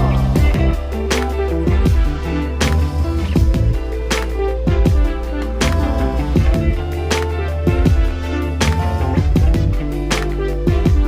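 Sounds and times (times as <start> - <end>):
deep sliding bass notes: 0.0 - 11.0
electronic music with steady beat: 0.0 - 11.0.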